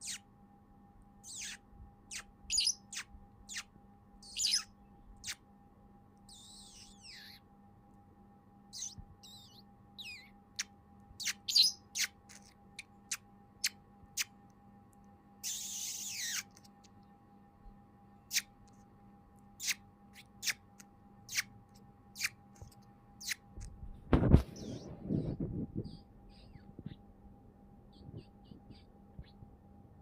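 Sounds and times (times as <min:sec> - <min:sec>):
lovebird chirping: 0:00.0 - 0:00.3, 0:01.2 - 0:05.4, 0:06.2 - 0:07.5, 0:08.7 - 0:14.4, 0:15.4 - 0:17.0, 0:18.3 - 0:18.7, 0:19.6 - 0:23.7, 0:24.4 - 0:27.1, 0:27.8 - 0:29.5
faint steady hum: 0:00.0 - 0:30.0.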